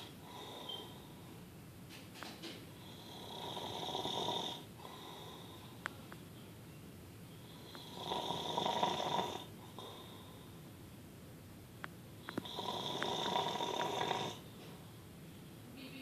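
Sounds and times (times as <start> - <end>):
quiet breathing: 0.0 - 1.5, 2.7 - 6.2, 7.3 - 10.8
man snoring: 2.8 - 5.4, 7.6 - 9.9, 12.4 - 14.4.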